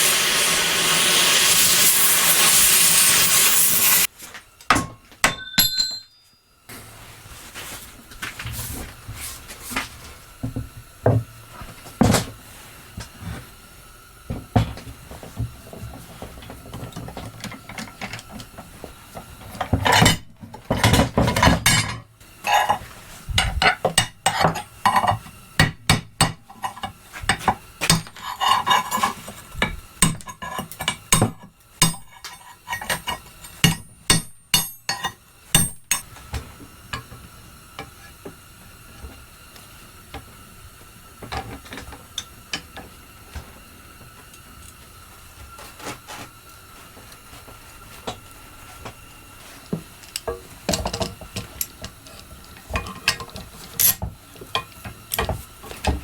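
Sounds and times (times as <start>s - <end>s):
cutting torch hissing: 0.0s - 4.1s
metallic clanks of steel and tools: 4.7s - 6.4s, 19.6s - 22.8s, 26.6s - 36.1s, 50.1s - 56.0s.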